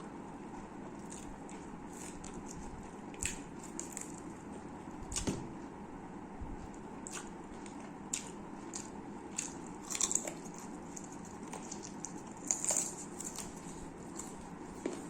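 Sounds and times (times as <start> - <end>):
food crunching when bitten: 7.0 - 15.0.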